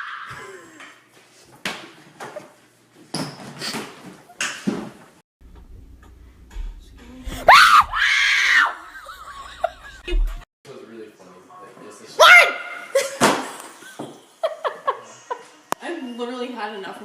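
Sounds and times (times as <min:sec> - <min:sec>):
person screaming: 0:07.3 - 0:08.8.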